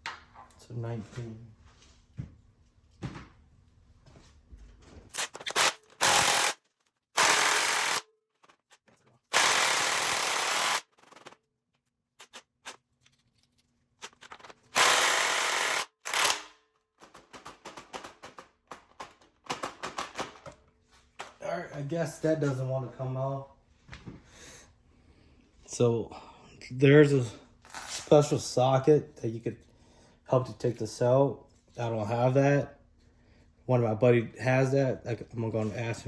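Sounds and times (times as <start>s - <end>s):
impact wrench hammering: 7.2s - 8.0s
clicks and tool handling: 12.2s - 14.7s.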